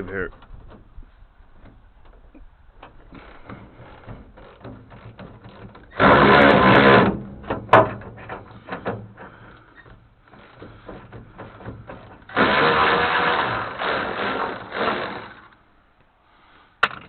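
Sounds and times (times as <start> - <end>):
cordless power tool burst: 5.9 - 7.2, 12.2 - 15.7.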